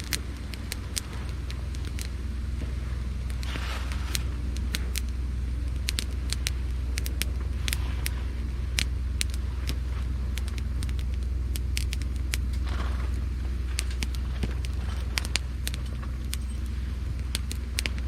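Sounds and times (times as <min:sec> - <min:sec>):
campfire crackling and popping: 0:00.0 - 0:18.0
steady low hum: 0:00.0 - 0:18.0.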